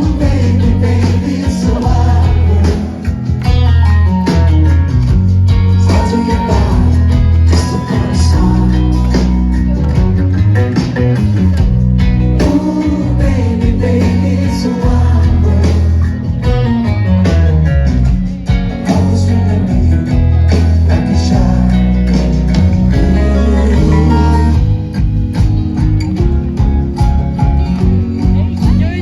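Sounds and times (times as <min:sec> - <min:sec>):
person singing: 0:00.0 - 0:03.3, 0:05.7 - 0:09.5, 0:12.4 - 0:16.6, 0:20.9 - 0:24.8
bass guitar: 0:00.0 - 0:29.0
strummed guitar: 0:00.0 - 0:29.0.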